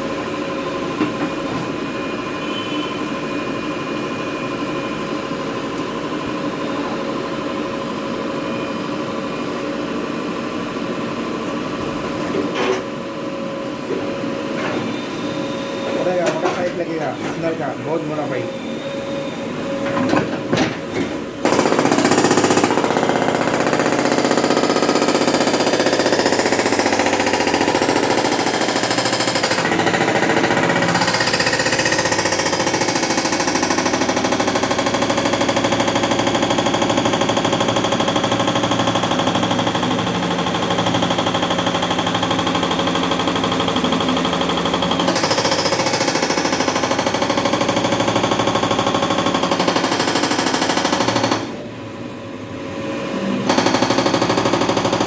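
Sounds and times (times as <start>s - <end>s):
hydraulic breaker hammering road: 15.8s - 18.4s, 19.8s - 51.6s, 52.9s - 55.0s.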